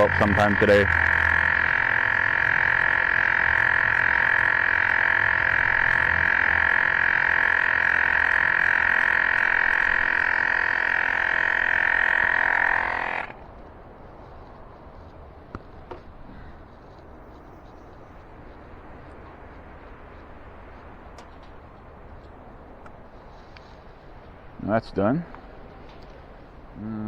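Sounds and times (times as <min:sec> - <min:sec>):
electric bike pump buzzing: 0:00.0 - 0:13.5.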